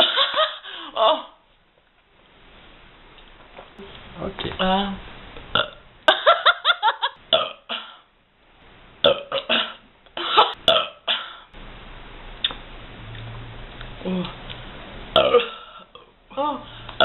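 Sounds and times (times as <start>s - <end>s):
girl burping: 7.3s - 7.8s, 10.7s - 11.2s, 15.2s - 16.1s.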